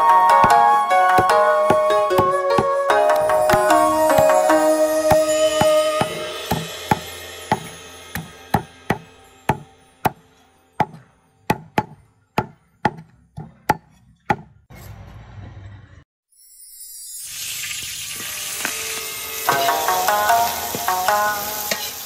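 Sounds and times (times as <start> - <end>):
background music: 0.0 - 13.2, 19.4 - 22.0
knife chopping on cutting board: 5.1 - 10.2.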